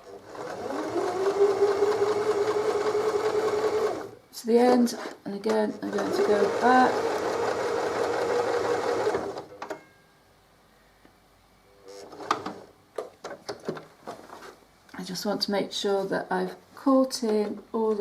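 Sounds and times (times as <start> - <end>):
sewing machine stitching: 0.0 - 9.6.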